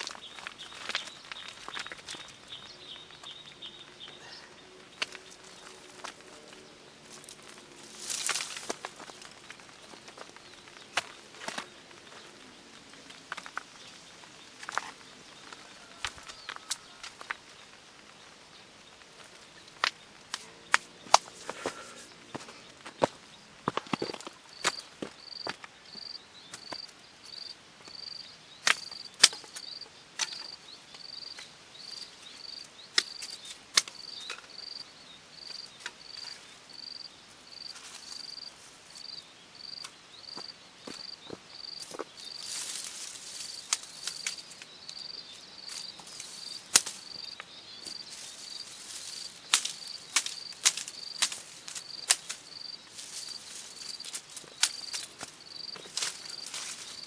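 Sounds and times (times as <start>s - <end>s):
insect chirping: 23.0s - 57.0s.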